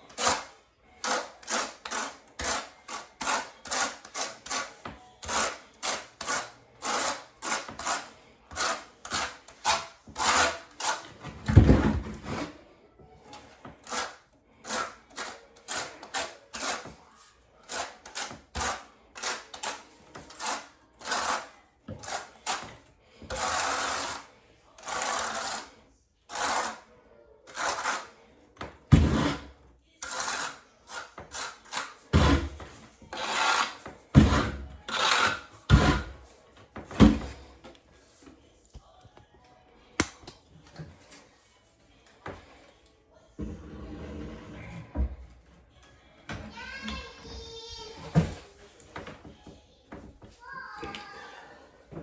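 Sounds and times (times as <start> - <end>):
trowel scraping mortar: 0.0 - 12.6, 13.3 - 26.9, 27.5 - 28.3, 28.9 - 36.4.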